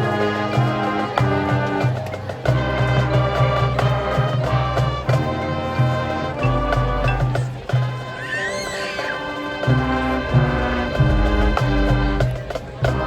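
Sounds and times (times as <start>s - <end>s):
marching band playing: 0.0s - 13.0s
sharp percussion hits: 6.4s - 7.8s, 10.0s - 13.0s
deep bass note: 10.2s - 12.5s.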